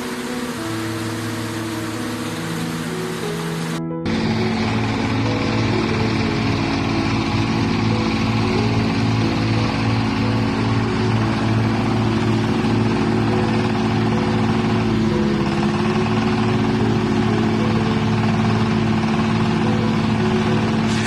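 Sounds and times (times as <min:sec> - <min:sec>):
shredder engine running: 0:00.0 - 0:21.0.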